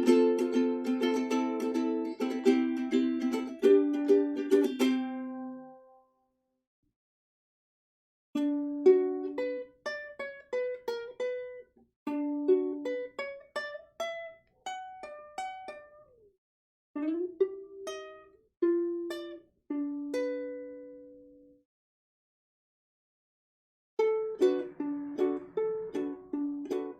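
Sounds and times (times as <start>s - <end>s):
ukulele melody: 0.0s - 6.1s, 8.4s - 16.3s, 17.0s - 21.6s, 24.0s - 26.9s.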